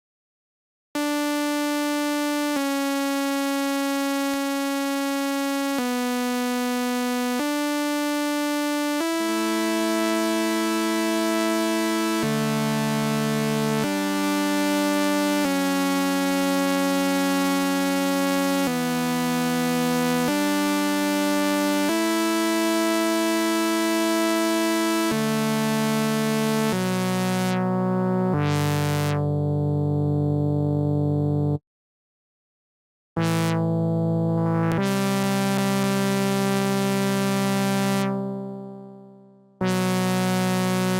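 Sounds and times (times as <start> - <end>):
synthesizer pad chords: 26.8 - 31.6, 33.2 - 40.9
low synthesizer line: 27.5 - 31.6, 33.2 - 40.3.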